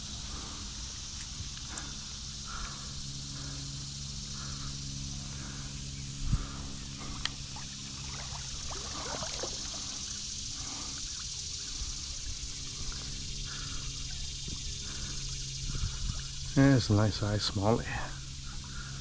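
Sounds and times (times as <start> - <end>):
creek water trickling: 5.3 - 17.8
small splashes: 7.1 - 10.2.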